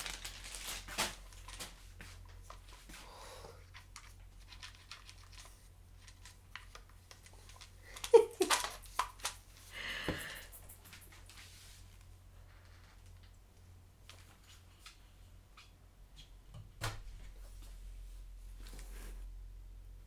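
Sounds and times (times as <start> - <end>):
packaging rustling and tearing: 0.0 - 2.2, 3.8 - 9.4.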